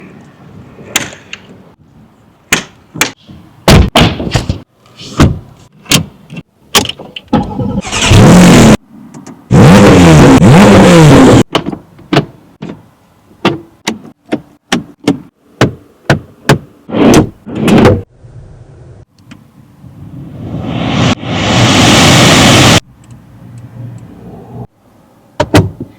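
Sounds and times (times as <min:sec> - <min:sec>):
car engine revving: 0:07.8 - 0:08.8, 0:09.5 - 0:11.5.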